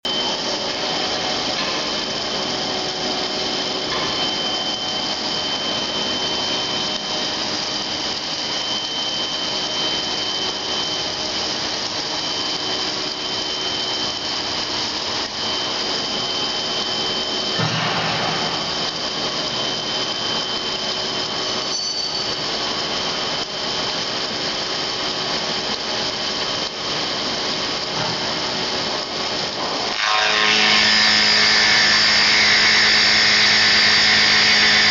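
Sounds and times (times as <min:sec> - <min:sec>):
high spindle whine: 0:00.0 - 0:34.9
boring mill machining metal: 0:00.1 - 0:34.9.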